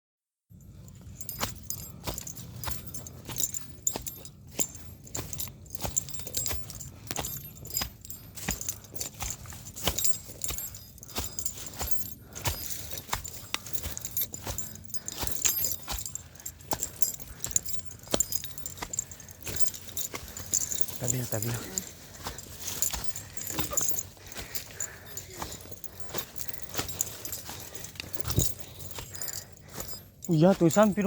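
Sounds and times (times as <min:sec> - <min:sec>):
small metal items jingling: 0:00.5 - 0:31.0.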